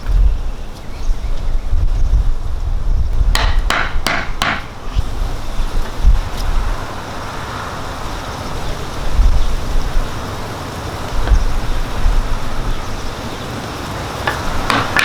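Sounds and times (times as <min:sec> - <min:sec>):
wind rumble on microphone: 0:00.0 - 0:15.0
hammer-like knocks on wood: 0:03.3 - 0:04.8, 0:14.3 - 0:15.0.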